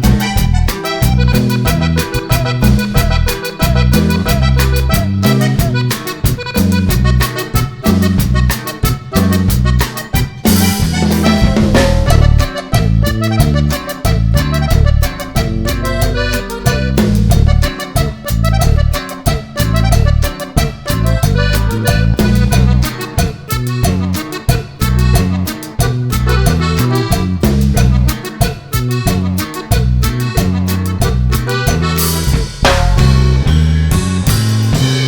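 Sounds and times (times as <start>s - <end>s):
upbeat accordion music with drums: 0.0s - 35.0s.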